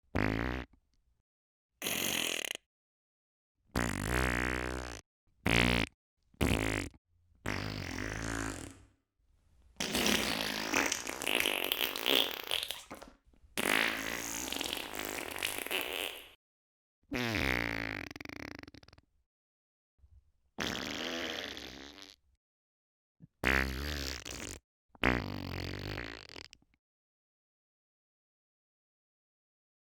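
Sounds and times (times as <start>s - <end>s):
farts: 0.2s - 0.8s, 1.8s - 2.6s, 3.7s - 8.9s, 9.8s - 16.4s, 17.1s - 19.0s, 20.6s - 22.2s, 23.3s - 26.7s.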